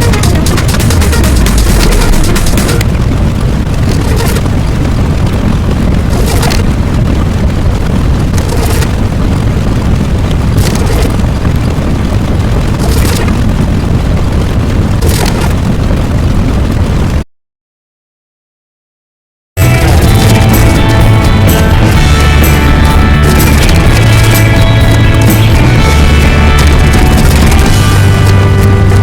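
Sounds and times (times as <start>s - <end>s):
continuous explosion rumble: 0.0s - 17.2s, 19.6s - 29.0s
hissing crackling bursts: 0.0s - 17.2s.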